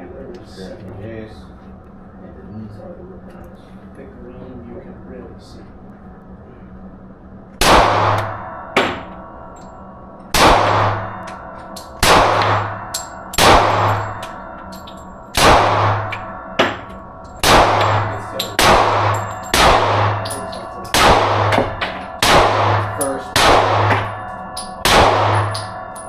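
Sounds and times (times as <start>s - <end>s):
gunshots with ringing echo: 7.6s - 9.6s, 10.3s - 26.0s.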